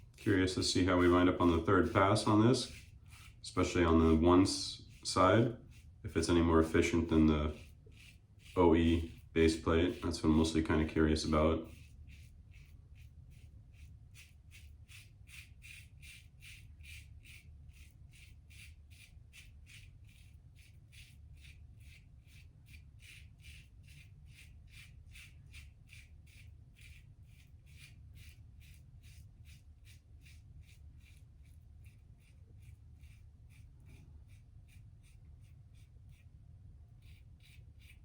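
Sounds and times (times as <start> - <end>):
razor scraping stubble: 0.0 - 38.0.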